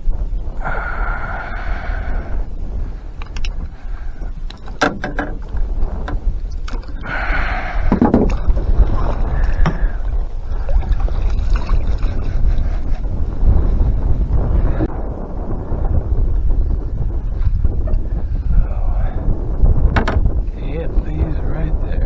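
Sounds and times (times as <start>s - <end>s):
wind rumbling on microphone: 0.0s - 22.0s
sharp knocks: 4.5s - 6.2s, 7.9s - 8.4s, 19.9s - 20.4s
water splashing: 4.5s - 13.0s.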